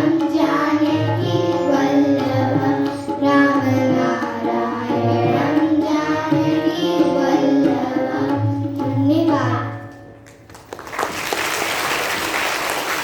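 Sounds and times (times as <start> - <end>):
children singing: 0.0 - 9.1
musical accompaniment: 0.0 - 10.8.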